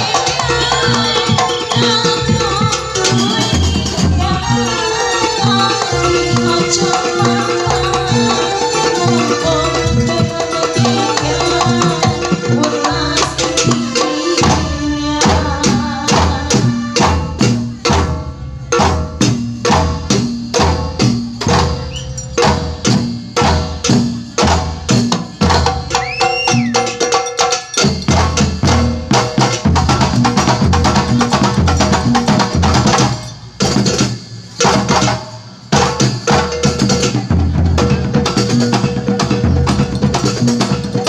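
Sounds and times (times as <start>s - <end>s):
held melody: 0.0s - 14.4s
frame drums and bass drum: 0.0s - 41.0s.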